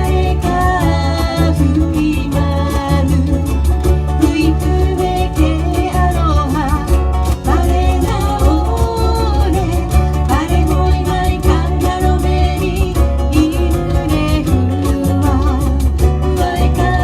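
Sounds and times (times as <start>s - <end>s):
person singing: 0.0s - 17.0s
steady bass line: 0.0s - 17.0s
strummed ukulele: 0.0s - 17.0s.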